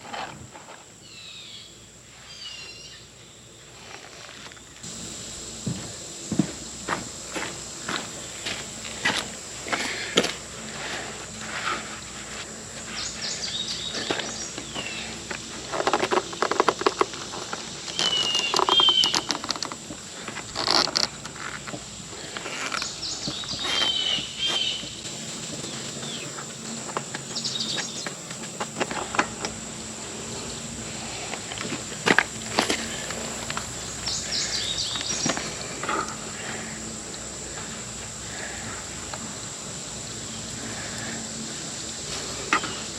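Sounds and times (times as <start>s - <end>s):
high insect drone: 0.0s - 42.9s
hand tools clattering and clicking: 13.5s - 29.6s, 31.2s - 36.6s.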